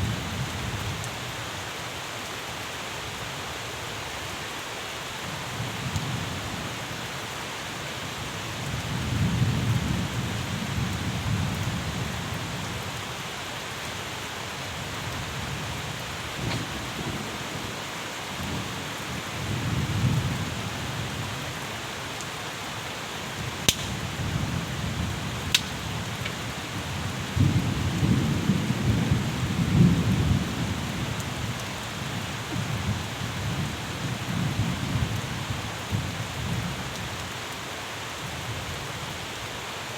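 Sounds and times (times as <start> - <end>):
steady rainfall hissing: 0.0 - 39.9
low thunder rumbling: 15.1 - 21.2, 23.4 - 31.5
sharp ticks: 23.7 - 24.0.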